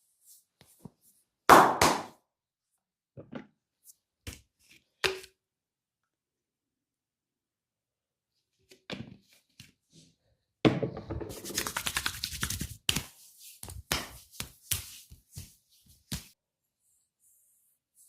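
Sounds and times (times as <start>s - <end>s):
hands slapping skin: 11.4s - 16.4s.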